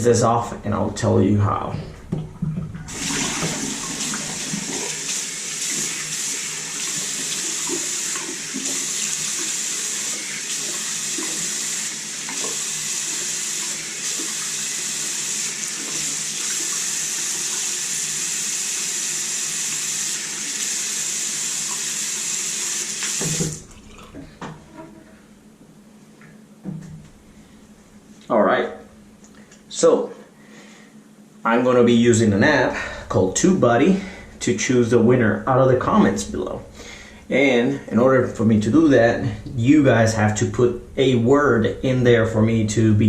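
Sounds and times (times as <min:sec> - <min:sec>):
tap running into sink: 0:02.1 - 0:05.1, 0:23.0 - 0:24.6
rinsing under water stream: 0:02.4 - 0:24.4.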